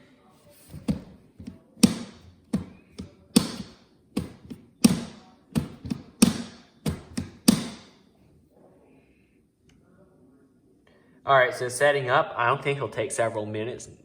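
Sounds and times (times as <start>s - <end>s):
sharp taps on hard surface: 0.7s - 8.0s.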